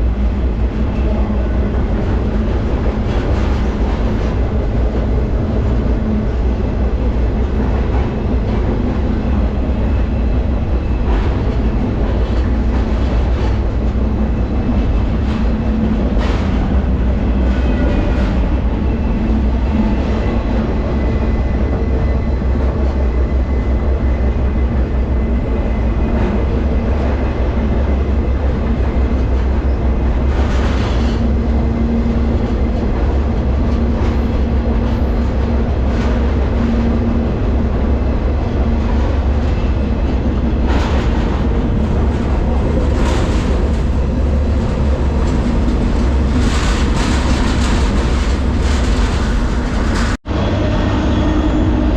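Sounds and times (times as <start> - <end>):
freight train rumbling: 0.0 - 51.9
train clanks: 0.0 - 51.9
high metallic squeals: 50.3 - 51.9.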